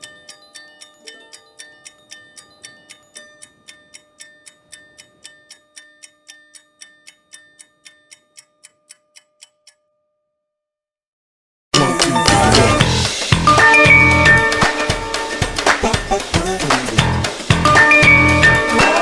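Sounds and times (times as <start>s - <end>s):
faint clock-like ringtone ticking: 0.0s - 10.0s, 13.2s - 15.7s, 17.6s - 19.0s.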